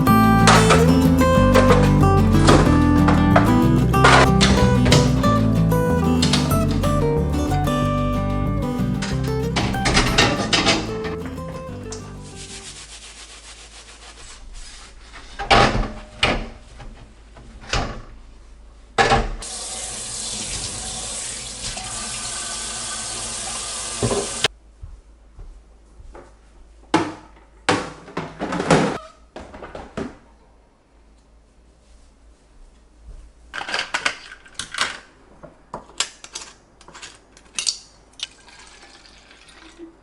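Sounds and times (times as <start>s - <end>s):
background music: 0.0s - 12.6s
knocks and clatter: 0.5s - 7.0s, 9.0s - 11.7s
tap running into a sink: 23.9s - 24.4s.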